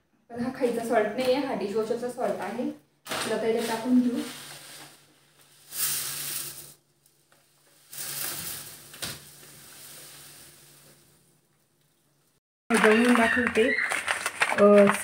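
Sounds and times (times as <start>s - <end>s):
salt pouring through a funnel: 3.8s - 6.8s, 7.4s - 11.3s.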